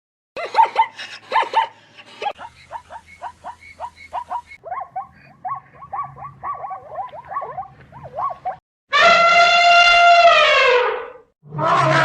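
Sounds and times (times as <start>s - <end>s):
short pitched animal calls: 2.4s - 8.6s.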